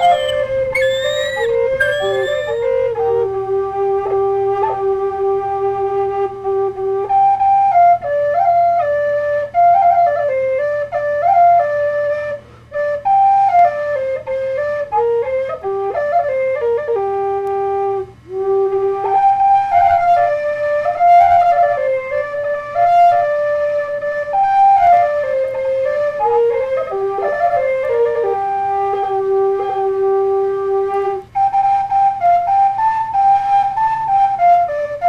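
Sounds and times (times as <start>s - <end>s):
faint steady hum: 0.0s - 35.0s
solo flute melody: 0.0s - 35.0s.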